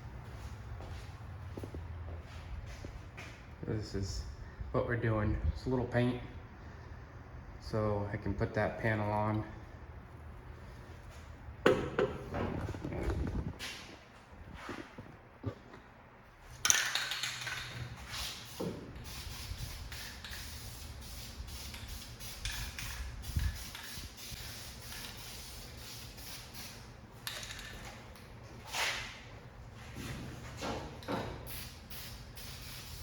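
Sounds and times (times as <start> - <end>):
spray paint hissing: 18.0 - 27.6, 31.5 - 33.0.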